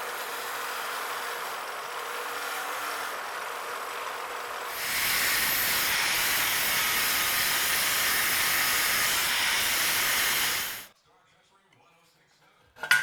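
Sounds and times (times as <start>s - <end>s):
compressed air tool hissing: 4.7s - 10.9s.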